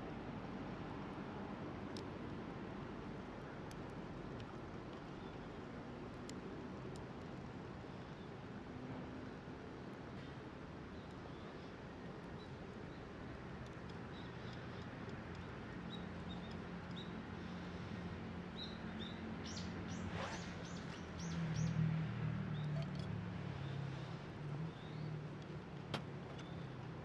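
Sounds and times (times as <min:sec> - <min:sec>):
small birds chirping: 0:03.4 - 0:25.7, 0:26.3 - 0:27.0.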